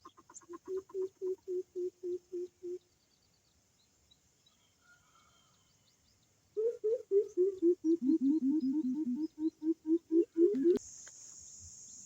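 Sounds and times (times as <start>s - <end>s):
small birds chirping: 0.0s - 12.0s
deep hooting bird call: 6.6s - 10.8s.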